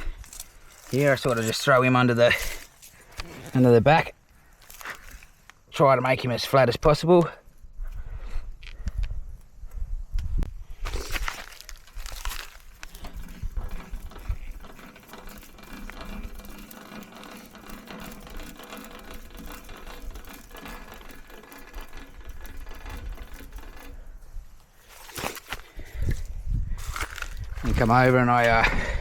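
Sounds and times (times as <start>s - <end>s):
bottle jack clicking and rattling: 11.6s - 24.2s.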